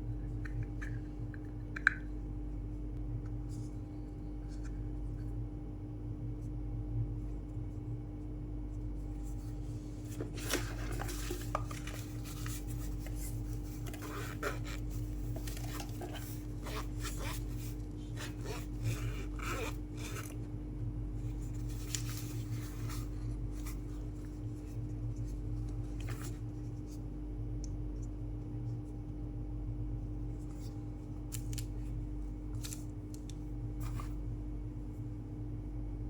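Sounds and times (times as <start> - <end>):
steady low hum: 0.0 - 36.0
packaging being handled: 10.0 - 20.5.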